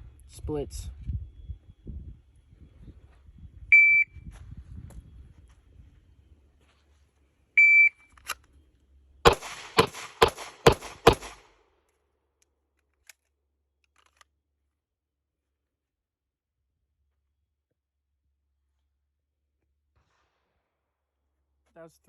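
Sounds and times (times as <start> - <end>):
shot timer beep: 3.7 - 4.2, 7.6 - 8.1
pistol shots: 9.2 - 11.6.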